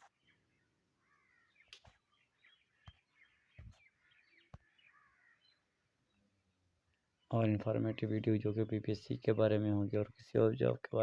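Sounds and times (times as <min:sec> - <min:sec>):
faint birds chirping: 0:00.0 - 0:11.0.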